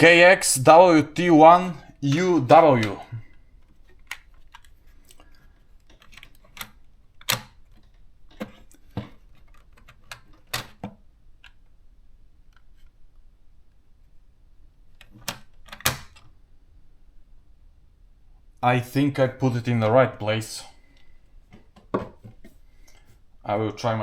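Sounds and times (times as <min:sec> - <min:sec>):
plastic clicks and knocks: 0:21.5 - 0:22.5.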